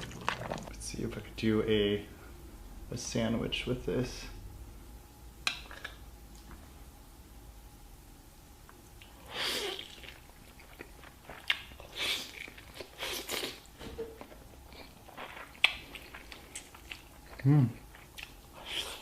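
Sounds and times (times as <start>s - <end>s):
person biting and chewing food: 9.0s - 19.0s.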